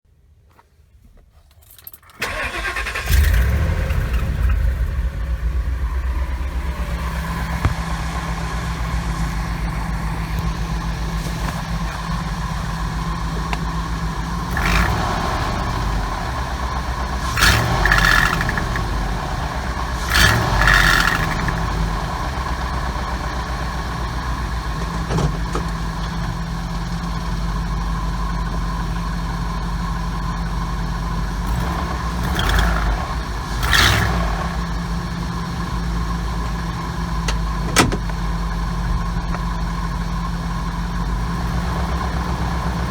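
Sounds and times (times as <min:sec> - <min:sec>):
engine idling and revving: 0:02.2 - 0:42.9.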